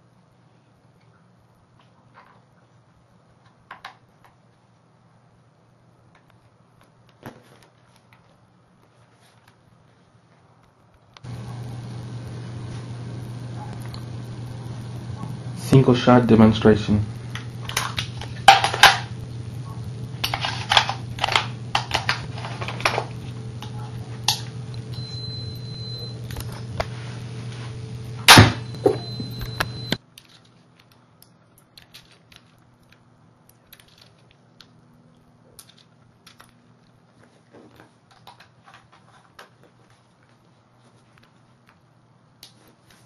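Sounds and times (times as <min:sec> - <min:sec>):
steady low hum: 0:00.0 - 0:43.0
high whine of charging circuit: 0:11.2 - 0:30.0
clicks and handling: 0:20.1 - 0:24.8, 0:29.4 - 0:40.4.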